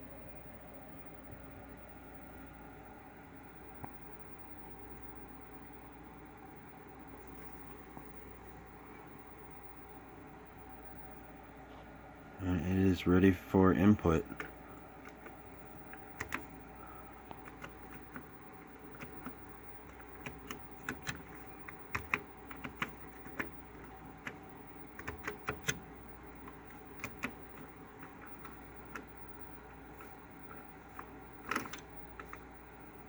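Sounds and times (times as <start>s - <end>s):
steady hum: 0.0s - 33.0s
keyboard key clicks: 18.9s - 32.4s.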